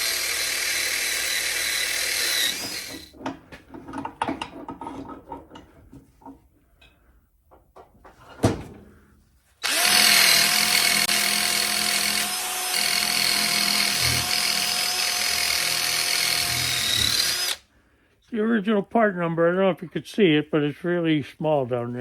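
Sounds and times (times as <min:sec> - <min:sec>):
power wire brush on metal: 0:00.0 - 0:03.1, 0:09.6 - 0:17.6.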